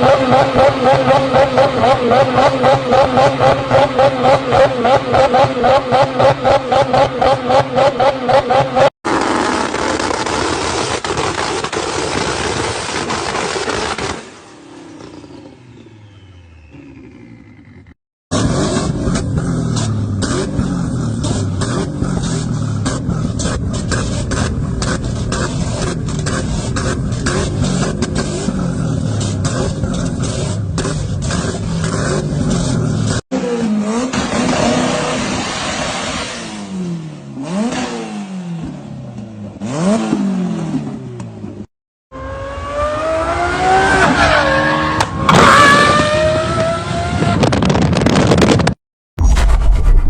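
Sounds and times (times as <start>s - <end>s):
exhaust crackle: 15.0s - 33.1s
car engine revving: 16.0s - 35.4s.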